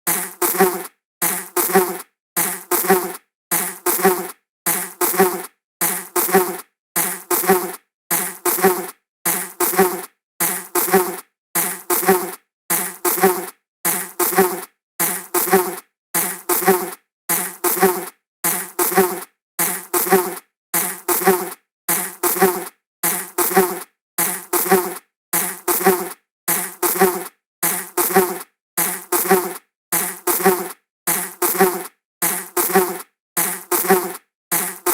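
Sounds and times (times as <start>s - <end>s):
insect buzzing past: 0.1s - 34.9s.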